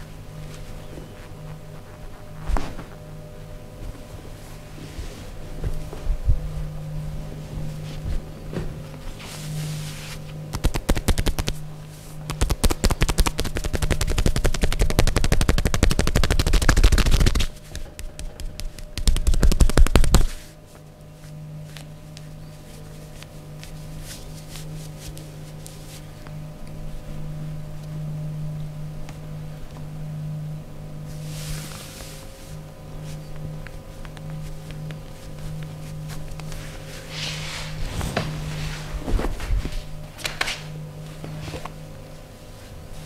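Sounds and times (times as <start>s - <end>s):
steady low hum: 0.0s - 43.0s
percussive massage strikes: 10.5s - 20.4s.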